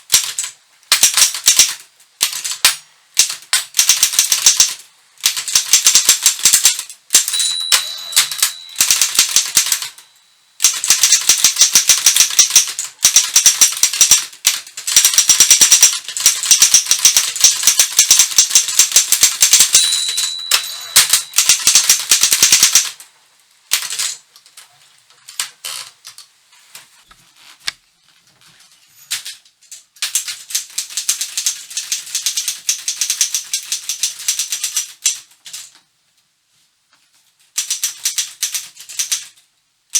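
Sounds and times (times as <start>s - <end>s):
typewriter typing: 0.1s - 23.0s, 23.7s - 24.2s, 29.1s - 35.7s, 37.5s - 39.4s
typewriter bell ringing: 7.2s - 13.9s, 15.0s - 22.9s.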